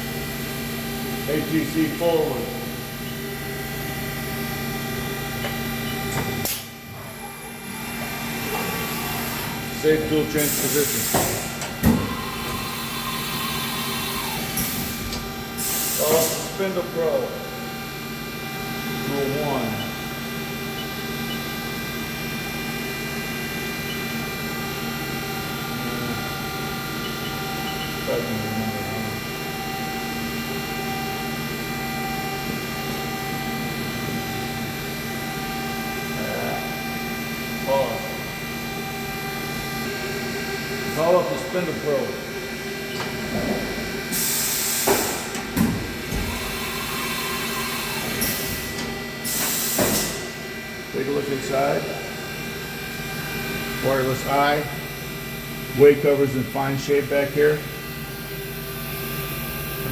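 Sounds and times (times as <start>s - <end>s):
machining center whine: 0.0s - 59.9s
machine clunks: 10.1s - 12.8s
air hiss: 10.4s - 15.0s, 15.6s - 16.6s.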